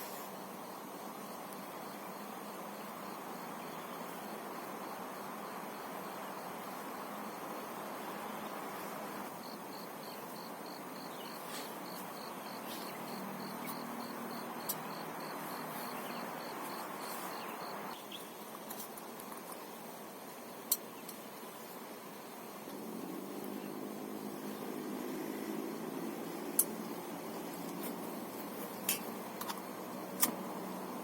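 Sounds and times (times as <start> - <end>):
insect chirping: 0.0 - 31.0.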